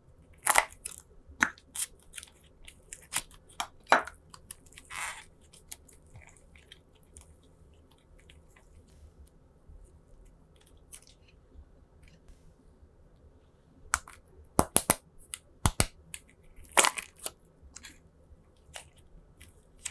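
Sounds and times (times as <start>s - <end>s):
slime popping and crackling: 0.4s - 1.9s, 14.0s - 15.0s, 15.7s - 15.9s, 16.7s - 17.3s.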